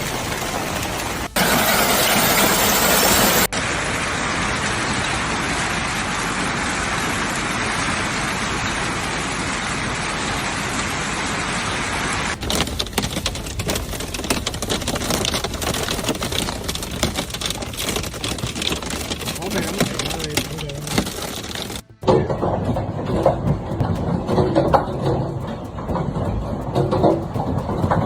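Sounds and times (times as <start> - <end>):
hailstones clattering on hard surface: 0.0 - 3.5, 12.3 - 28.0
hail falling: 0.0 - 28.0.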